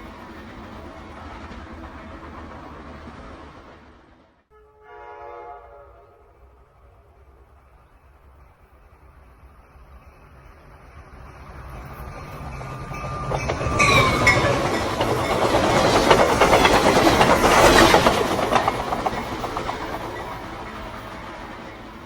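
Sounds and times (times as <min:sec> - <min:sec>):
train passing: 0:00.0 - 0:22.0
wheels clacking over rail joints: 0:11.2 - 0:22.0.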